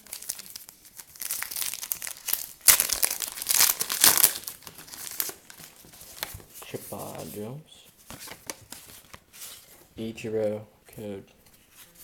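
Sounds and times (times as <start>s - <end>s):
wrapper crinkling: 0.0s - 6.4s.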